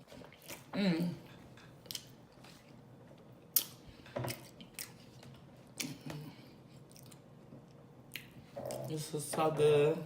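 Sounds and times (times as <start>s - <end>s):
close-up chewing: 3.5s - 9.0s.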